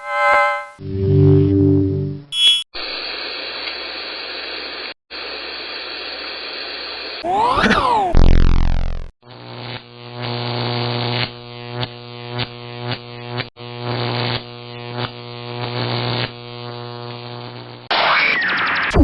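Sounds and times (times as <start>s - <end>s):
pulsing sci-fi electronic hum: 0.8s - 2.3s, 8.1s - 9.1s.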